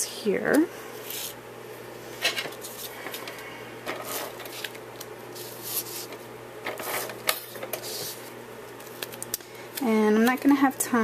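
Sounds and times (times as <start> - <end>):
paper rustling and sliding: 2.5 - 9.2.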